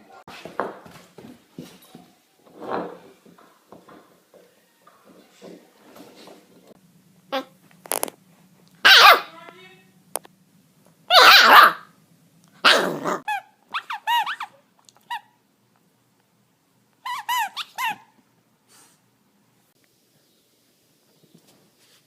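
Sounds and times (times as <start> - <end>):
puppy yipping: 8.8 - 9.3, 11.1 - 11.9, 12.6 - 15.3, 17.0 - 18.1
puppy barking: 8.8 - 9.4, 11.1 - 11.9, 12.6 - 14.5.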